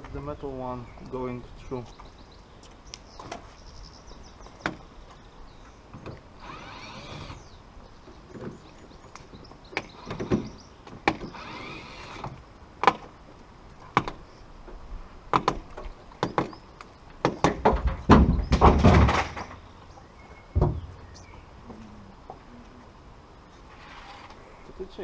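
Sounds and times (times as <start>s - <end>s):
scraping or rasping: 23.7s - 24.6s.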